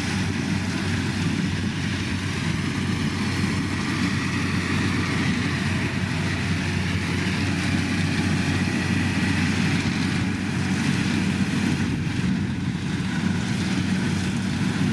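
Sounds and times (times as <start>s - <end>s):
combine harvester engine drone: 0.0s - 14.9s.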